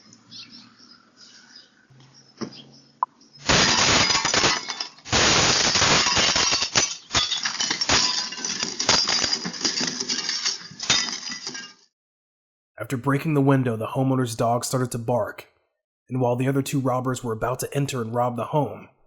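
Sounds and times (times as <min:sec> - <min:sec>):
glass breaking and shattering: 0:03.4 - 0:11.9
glass clinking: 0:03.5 - 0:11.8.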